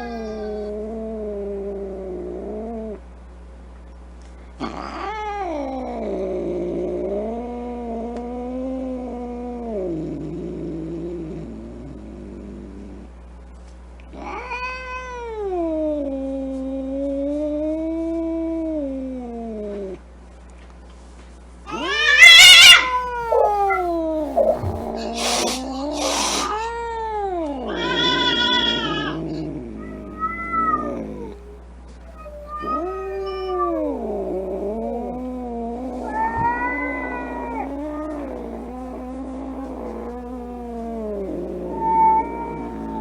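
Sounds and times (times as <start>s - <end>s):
cats caterwauling: 0.0s - 3.0s, 4.6s - 13.0s, 14.1s - 20.0s, 21.7s - 43.0s
cat hissing: 21.7s - 43.0s.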